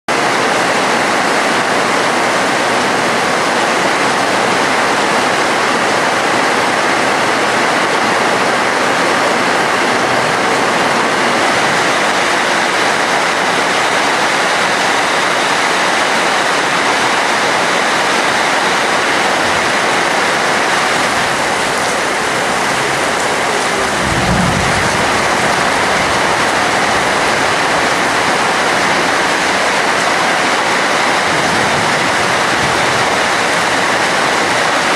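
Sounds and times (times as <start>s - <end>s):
heavy rain: 0.1s - 34.9s
low rumble: 22.4s - 27.9s.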